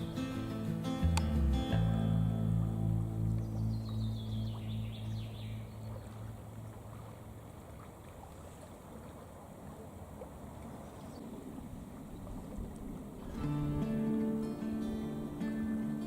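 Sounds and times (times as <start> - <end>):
background music: 0.0 - 4.4, 13.4 - 16.0.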